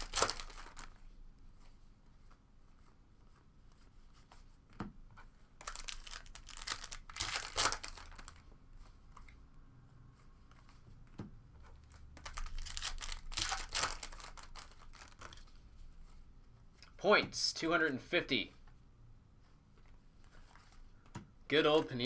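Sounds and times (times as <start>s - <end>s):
foil wrapper tearing and crinkling: 0.0s - 0.9s, 5.6s - 8.4s, 12.2s - 15.4s.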